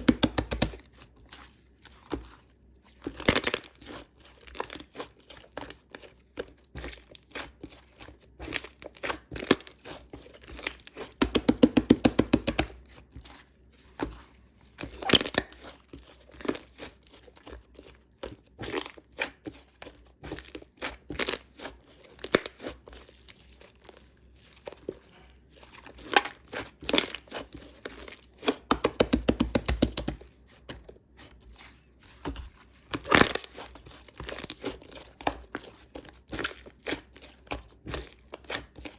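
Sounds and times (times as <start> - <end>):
slime crackling and popping: 14.9 - 15.7, 32.9 - 34.7.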